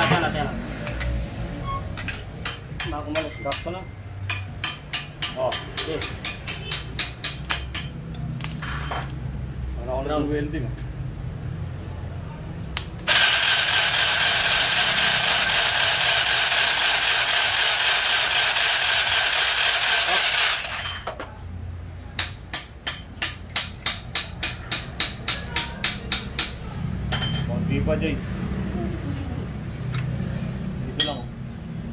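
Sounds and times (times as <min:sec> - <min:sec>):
power tool cutting metal: 0:13.1 - 0:21.0.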